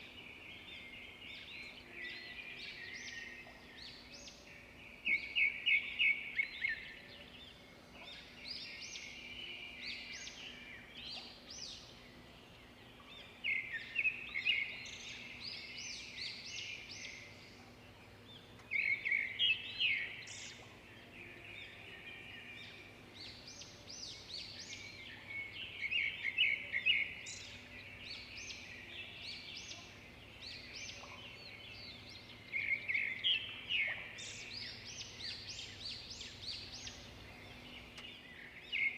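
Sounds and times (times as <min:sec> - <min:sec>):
faint steady hum: 0:00.0 - 0:38.9
songbirds chirping: 0:00.0 - 0:38.9.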